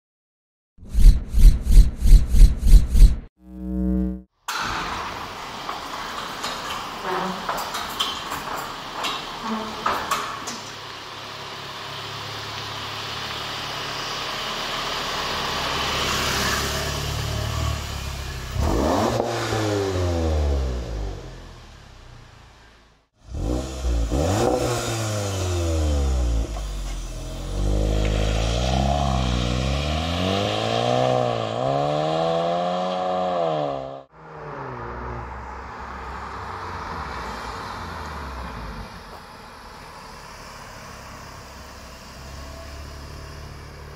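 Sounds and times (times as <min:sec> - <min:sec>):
car engine revving: 0:03.0 - 0:05.6, 0:13.2 - 0:22.0, 0:23.2 - 0:43.9.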